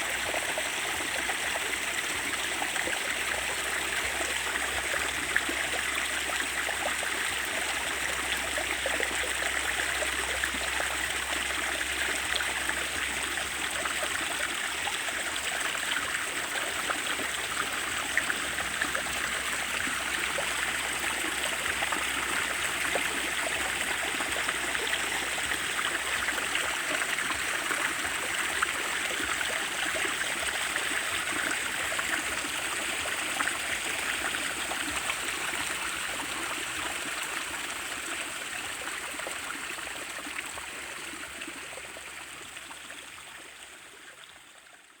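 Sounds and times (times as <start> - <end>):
running water: 0.0 - 43.9.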